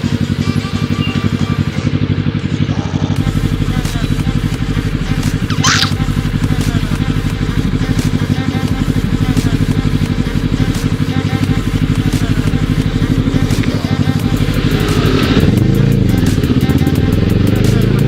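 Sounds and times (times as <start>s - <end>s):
motorcycle engine running: 0.0s - 18.0s
high screech: 2.7s - 17.0s.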